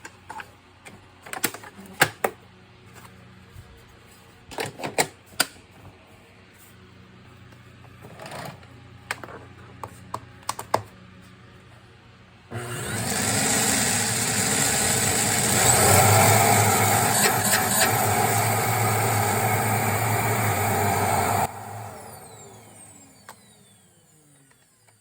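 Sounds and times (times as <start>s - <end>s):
vacuum cleaner motor whining: 12.5s - 25.0s.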